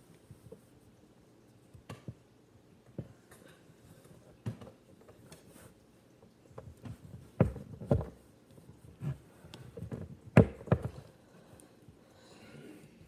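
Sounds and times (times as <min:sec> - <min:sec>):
cord handling knocks and taps: 0:06.5 - 0:08.2, 0:08.9 - 0:11.1.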